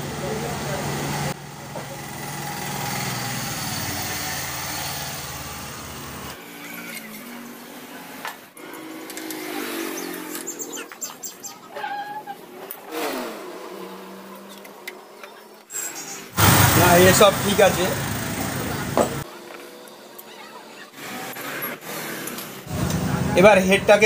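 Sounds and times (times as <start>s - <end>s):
motor running: 16.4s - 19.2s.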